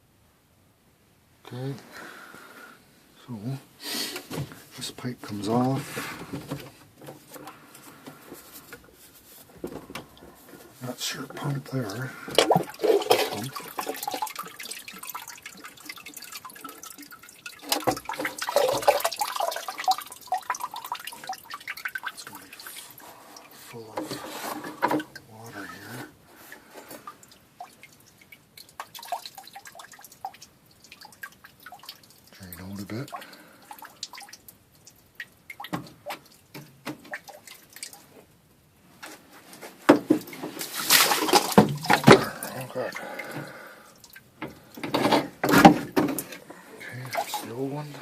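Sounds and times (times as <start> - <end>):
water splashing and dripping: 9.8 - 38.6, 39.9 - 48.0.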